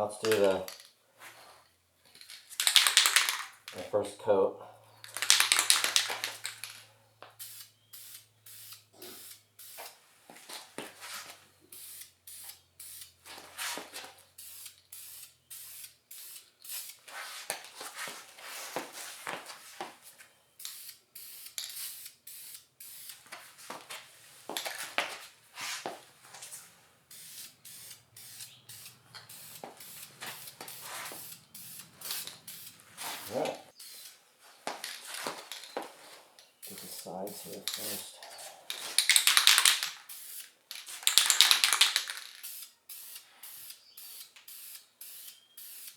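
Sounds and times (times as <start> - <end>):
aerosol can spraying in hissing bursts: 7.4 - 10.0, 10.9 - 19.3, 20.6 - 23.8, 24.6 - 34.2, 36.6 - 45.9.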